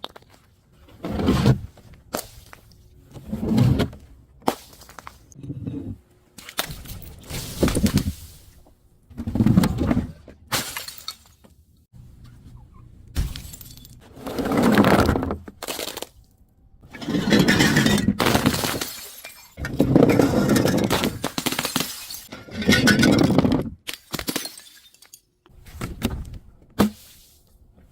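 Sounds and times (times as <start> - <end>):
glass bottle breaking and crunching: 10.5 - 11.4, 13.2 - 14.0, 15.6 - 16.2, 16.9 - 25.3.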